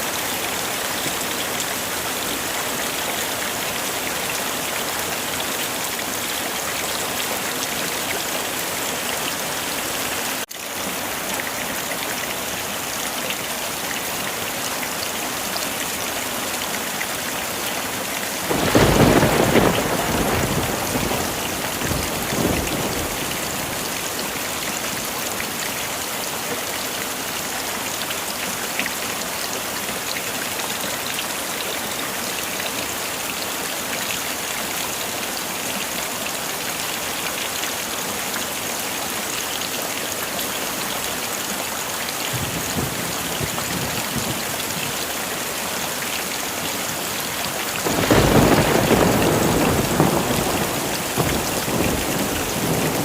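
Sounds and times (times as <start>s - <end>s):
heavy rain falling: 0.0s - 53.0s
thunder rumbling: 18.5s - 24.0s, 47.8s - 53.0s.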